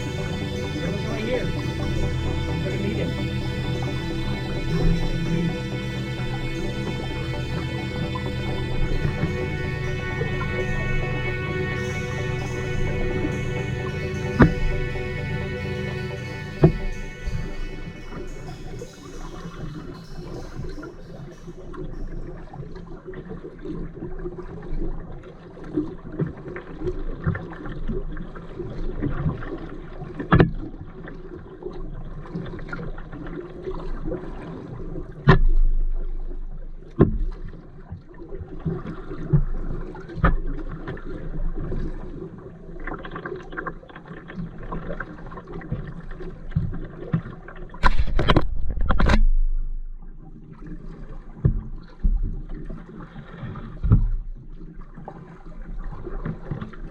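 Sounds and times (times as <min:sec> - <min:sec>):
paddle splashing in water: 0:22.8 - 0:56.9.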